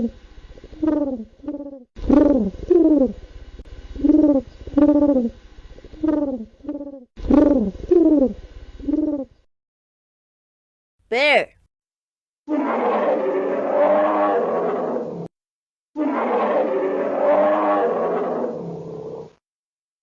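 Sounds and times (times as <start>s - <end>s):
pigeon cooing: 0.7s - 3.2s, 4.0s - 9.3s.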